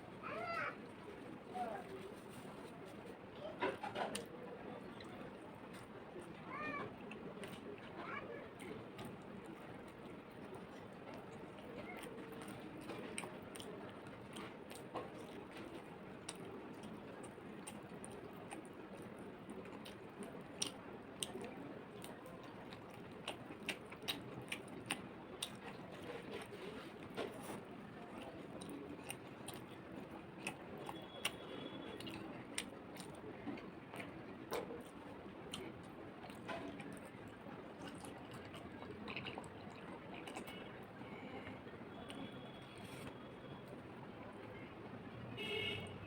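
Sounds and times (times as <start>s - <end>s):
person chewing food: 8.8s - 43.2s.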